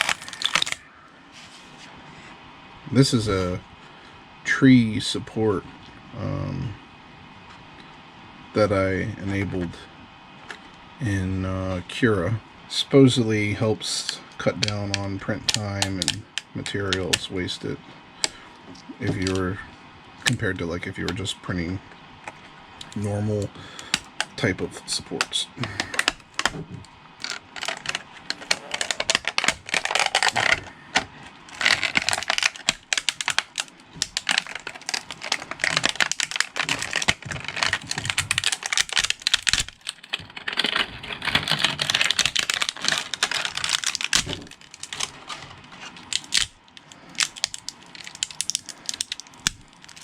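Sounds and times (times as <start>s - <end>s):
plastic clicks and snaps: 14.1s - 17.2s, 23.8s - 24.3s, 25.2s - 30.7s, 31.5s - 45.1s.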